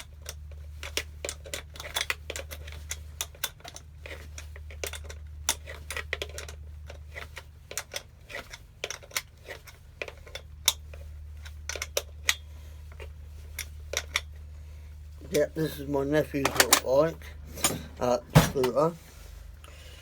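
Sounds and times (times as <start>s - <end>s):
spanner clicking on nut and bolt: 11.4s - 12.4s.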